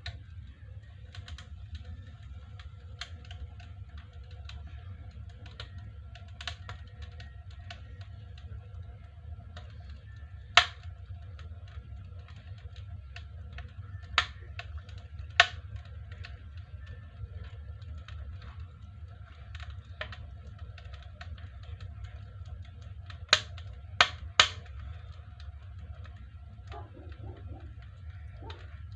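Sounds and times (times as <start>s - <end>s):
fire rumbling: 0.0s - 28.9s
loud pops of fire: 0.0s - 28.9s
wood fire crackling: 0.0s - 28.9s.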